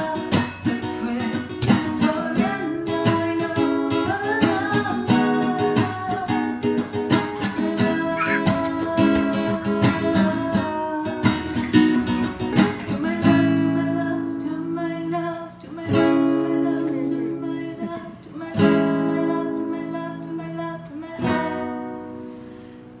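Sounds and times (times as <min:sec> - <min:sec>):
acoustic guitar strummed chords: 0:00.0 - 0:14.4.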